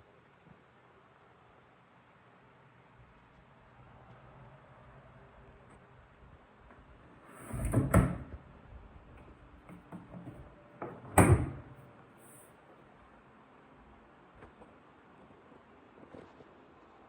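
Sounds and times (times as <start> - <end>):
washing machine door knocks: 7.5 - 8.4, 9.7 - 11.8.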